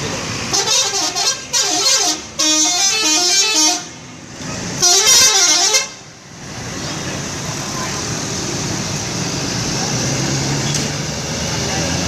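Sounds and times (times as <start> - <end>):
bus horn playing a tune: 0.5 - 4.0, 4.8 - 6.0.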